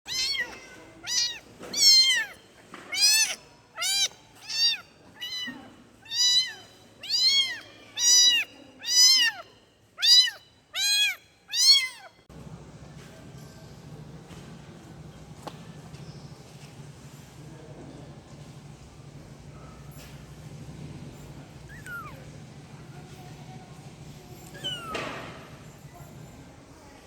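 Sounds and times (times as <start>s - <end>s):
kitten meowing: 0.1s - 12.2s, 21.7s - 22.2s, 24.5s - 25.0s.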